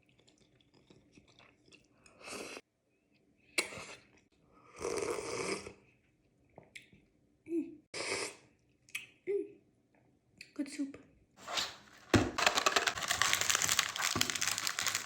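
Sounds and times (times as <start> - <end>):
person chewing food: 0.1 - 1.9.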